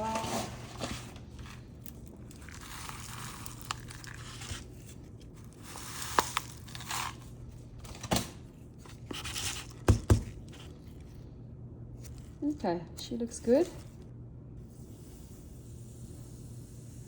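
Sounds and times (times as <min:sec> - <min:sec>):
substrate crunching in plastic cup: 0:01.4 - 0:07.7.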